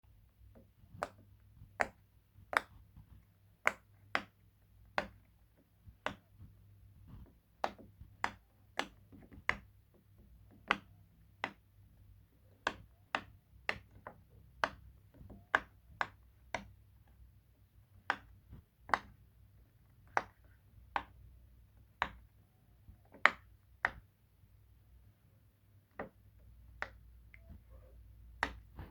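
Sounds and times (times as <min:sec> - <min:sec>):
puppet clicking: 0:07.5 - 0:17.2.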